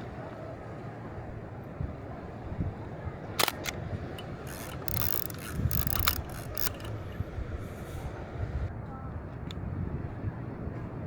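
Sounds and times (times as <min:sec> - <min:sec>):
camera shutter click: 0:03.4 - 0:03.8, 0:04.5 - 0:07.0
film advance crank ratcheting: 0:03.4 - 0:07.2.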